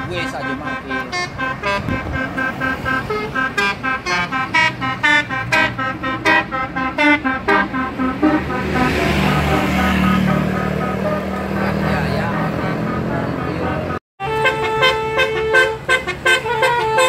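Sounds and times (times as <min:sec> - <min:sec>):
multi-tone musical air horn: 0:00.0 - 0:17.0
rushing noise: 0:00.8 - 0:14.0.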